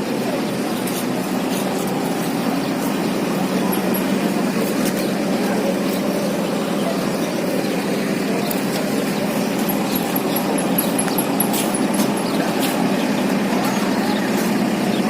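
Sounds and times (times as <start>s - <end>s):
high chirps: 2.7s - 4.8s, 9.2s - 13.4s.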